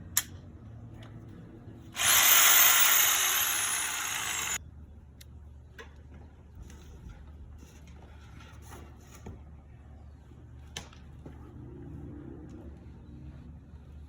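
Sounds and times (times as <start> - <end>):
jigsaw cutting sheet metal: 2.0 - 4.6.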